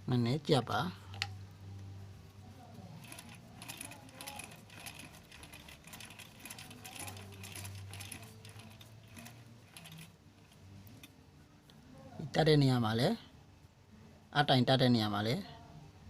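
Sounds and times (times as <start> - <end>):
faint low hum: 0.0 - 16.0
sewing machine clicking: 3.0 - 11.1.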